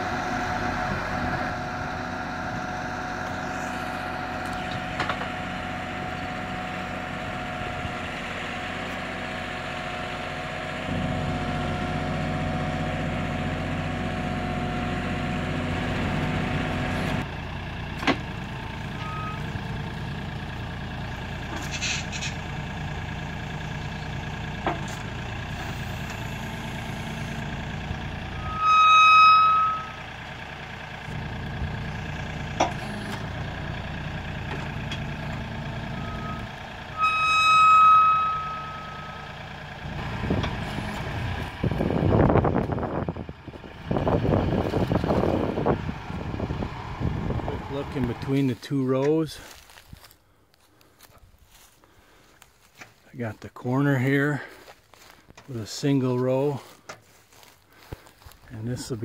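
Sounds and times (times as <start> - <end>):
diesel tractor engine running: 0.0 - 59.0
loud electronic beep: 36.0 - 39.2.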